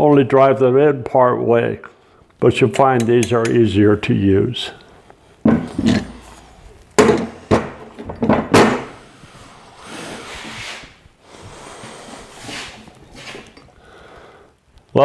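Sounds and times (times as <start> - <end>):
quiet scraping or rustling: 5.0 - 7.0, 9.0 - 13.8
metal knocks and clanks: 5.5 - 6.2, 7.0 - 8.9.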